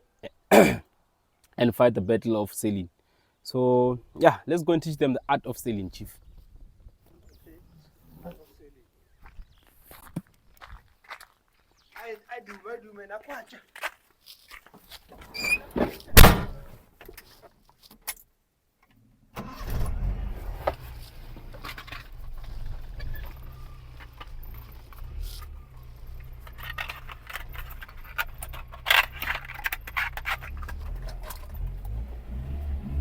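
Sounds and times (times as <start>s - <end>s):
loud thump: 15.8s - 16.7s
car engine rumbling: 19.4s - 33.0s
rattles and clicks: 20.5s - 32.1s.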